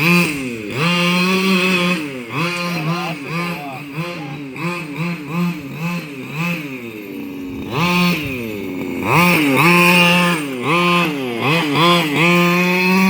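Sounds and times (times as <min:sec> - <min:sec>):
small two-stroke engine revving: 0:00.0 - 0:13.0.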